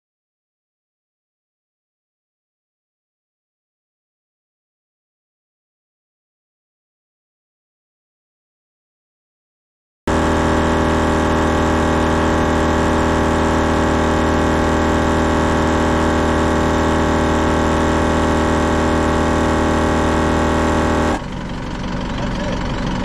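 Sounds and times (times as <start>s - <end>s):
air compressor motor hum: 10.1s - 23.0s.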